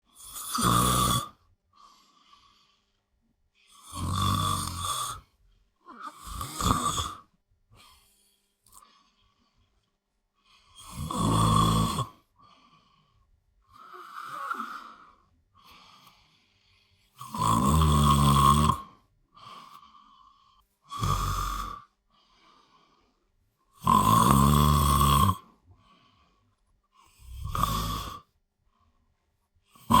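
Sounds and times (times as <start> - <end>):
person snoring heavily: 0.1 - 1.4, 3.7 - 5.3, 5.9 - 7.3, 10.8 - 12.2, 13.7 - 15.2, 17.2 - 18.9, 20.9 - 21.9, 23.8 - 25.5, 27.2 - 28.3, 29.8 - 30.0.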